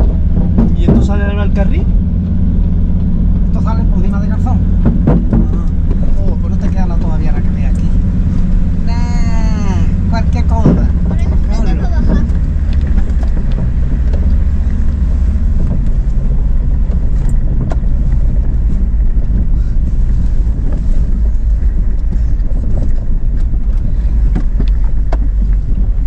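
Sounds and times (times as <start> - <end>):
vehicle knocks and rattles: 0.0 - 8.9, 9.9 - 26.0
vehicle engine rumble: 0.0 - 26.0.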